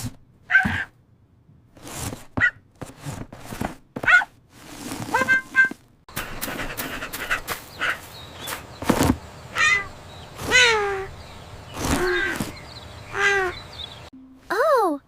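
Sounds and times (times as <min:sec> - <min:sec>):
knocks and rustles: 0:01.7 - 0:07.6, 0:08.4 - 0:09.3
kitten mewing: 0:09.6 - 0:11.1.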